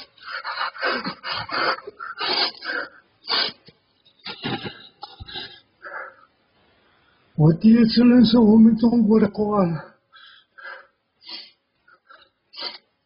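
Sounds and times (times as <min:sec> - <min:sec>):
old man sobbing: 0:00.0 - 0:03.0.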